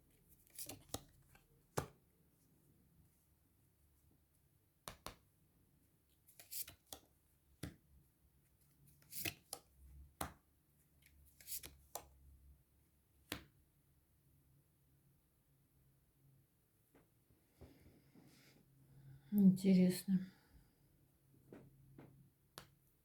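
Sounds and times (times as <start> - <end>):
cards tapping on table: 4.9 - 5.2.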